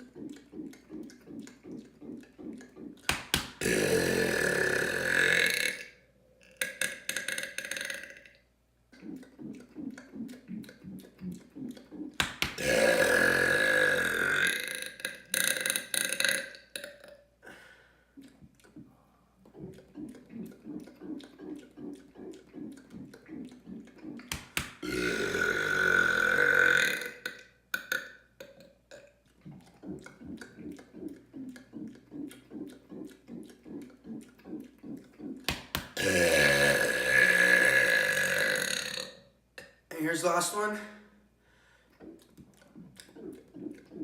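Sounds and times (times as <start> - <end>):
man burping loudly: 3.6 - 5.9, 6.8 - 8.3, 12.6 - 17.1, 24.8 - 29.1, 36.0 - 39.2.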